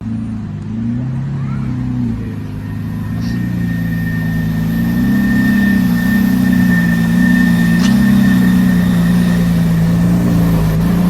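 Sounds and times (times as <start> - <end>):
car engine running at low revs: 0.0 - 11.0
thin high whine: 1.9 - 11.0.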